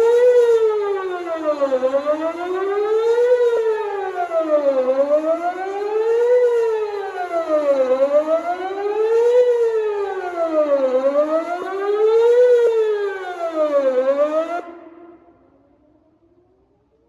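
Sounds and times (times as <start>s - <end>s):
tornado warning siren wailing: 0.0s - 17.0s.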